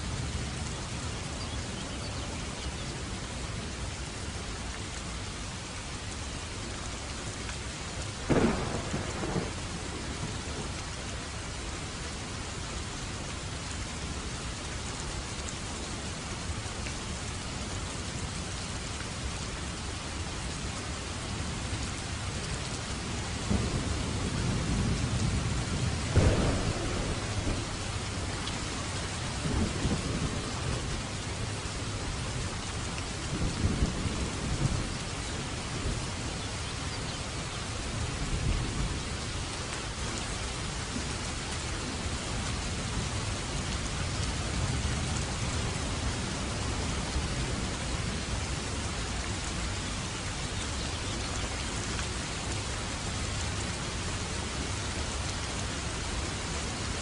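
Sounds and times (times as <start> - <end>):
heavy rain hissing: 0.0 - 57.0
thunder rumbling: 8.3 - 10.8, 23.4 - 31.6.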